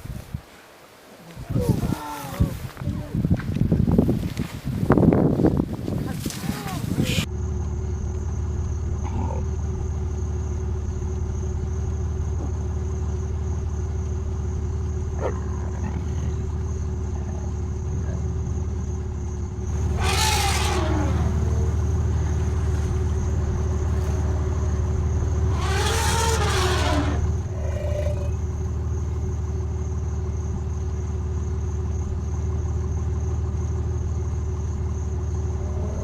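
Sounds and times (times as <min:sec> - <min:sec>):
vehicle engine idling: 0:07.2 - 0:36.0
large wild animal calling: 0:15.2 - 0:16.6, 0:19.7 - 0:29.2.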